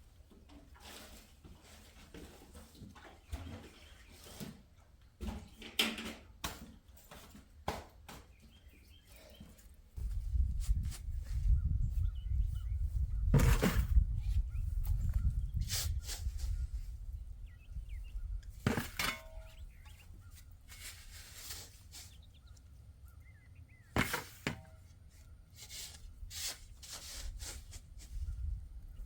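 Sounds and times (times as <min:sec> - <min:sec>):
faint bird chirps: 0:11.1 - 0:13.3
clinks and knocks: 0:18.7 - 0:20.0.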